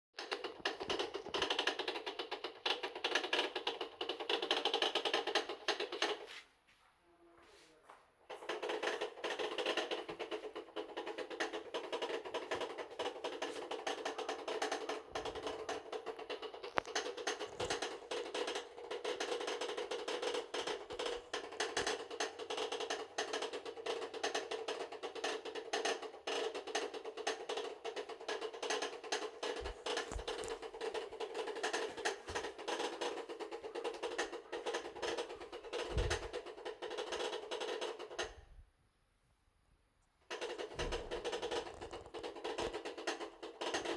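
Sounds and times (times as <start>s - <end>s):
washing machine hum: 27.5s - 37.6s.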